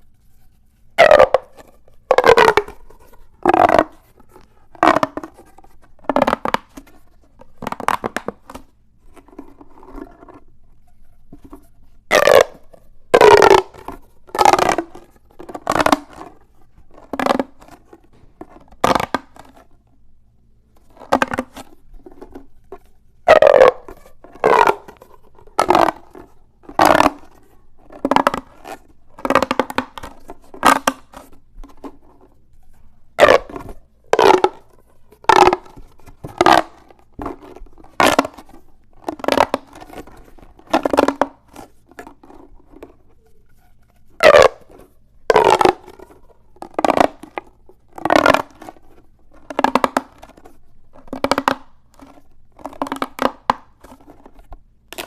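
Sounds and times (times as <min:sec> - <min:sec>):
plastic pop tube popping: 0:01.0 - 0:04.0, 0:04.7 - 0:05.4, 0:06.0 - 0:06.9, 0:07.5 - 0:08.7, 0:12.1 - 0:16.3, 0:16.9 - 0:19.6, 0:23.3 - 0:31.9, 0:33.2 - 0:42.9, 0:44.2 - 0:55.0.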